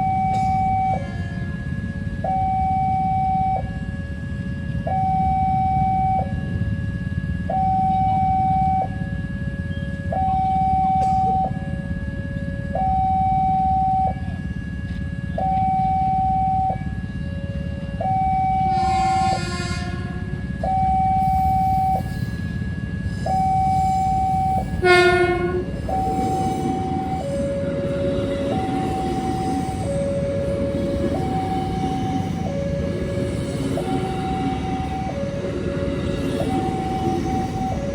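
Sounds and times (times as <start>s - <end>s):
train horn blasts: 0.0s - 2.4s, 7.4s - 12.8s, 15.2s - 22.3s, 23.1s - 37.9s
level crossing alarm two-tone wail: 0.0s - 37.9s
low rumble of rail traffic: 0.0s - 37.9s.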